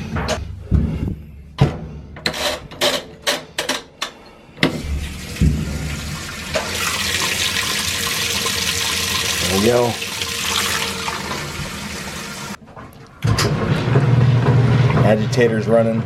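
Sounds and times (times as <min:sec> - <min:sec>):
water rushing into washing machine: 0:04.6 - 0:12.6.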